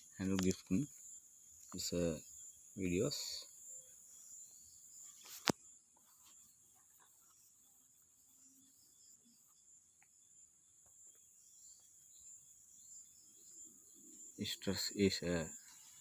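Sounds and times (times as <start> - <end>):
high-pitched hiss: 0.0 - 5.6, 11.0 - 16.0.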